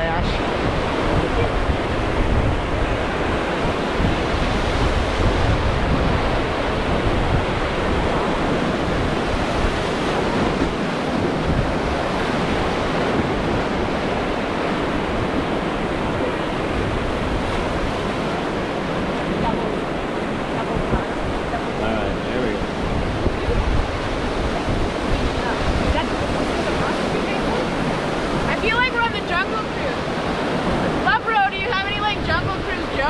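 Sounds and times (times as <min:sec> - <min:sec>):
river water rushing: 0:00.0 - 0:33.0
wind buffeting microphone: 0:00.0 - 0:33.0.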